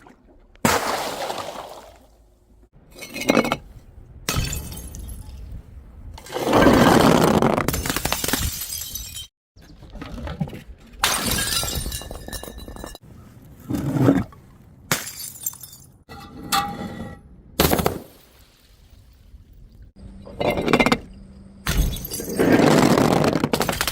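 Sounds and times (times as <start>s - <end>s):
glass bottles smashing: 7.8s - 9.3s, 11.0s - 13.0s, 14.9s - 16.0s, 21.7s - 22.6s.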